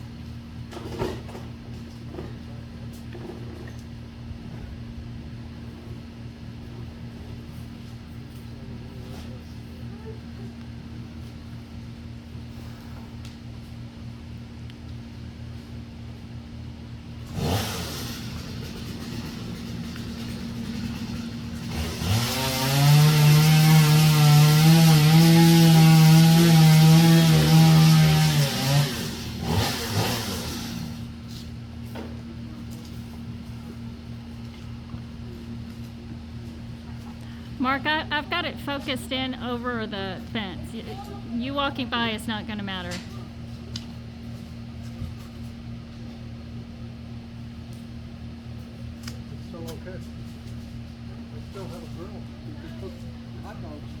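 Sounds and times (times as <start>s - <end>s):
engine idling: 17.2s - 22.5s
chainsaw revving: 17.2s - 31.1s.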